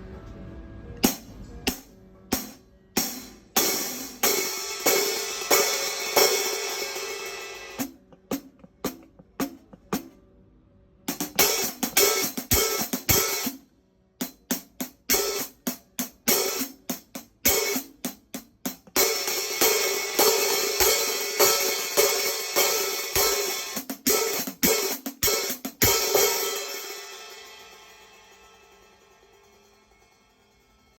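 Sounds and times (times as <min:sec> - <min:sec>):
hi-hat cymbal strikes: 0:01.0 - 0:10.2, 0:11.1 - 0:31.0
cymbal ringing wash: 0:25.8 - 0:31.0.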